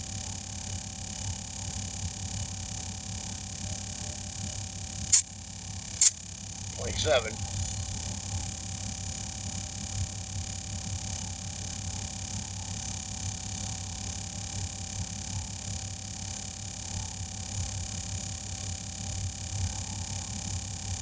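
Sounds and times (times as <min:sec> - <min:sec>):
air compressor running: 0:05.0 - 0:06.2.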